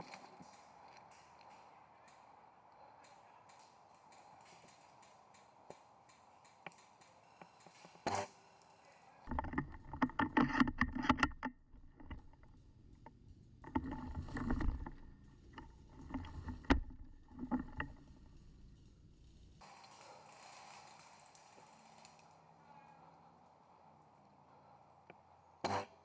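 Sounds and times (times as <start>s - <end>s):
rustling and crackling brush: 9.2s - 22.5s.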